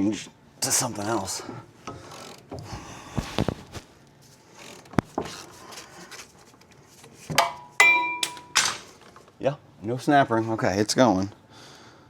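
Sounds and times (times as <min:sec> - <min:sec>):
ringing metal clank: 0:07.4 - 0:08.9.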